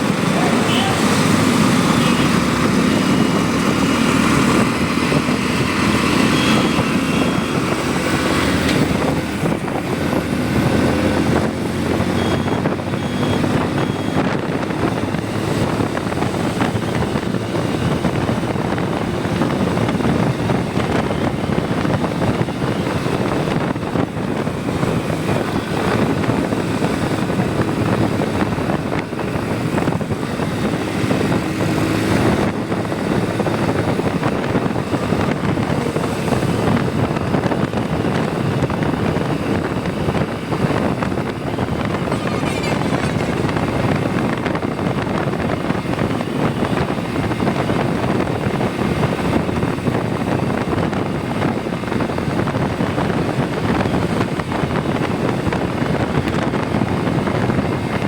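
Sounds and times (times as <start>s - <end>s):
motorcycle engine hum: 0.0s - 58.0s
road and wind noise: 0.0s - 58.0s
faint high beeps: 42.1s - 43.8s.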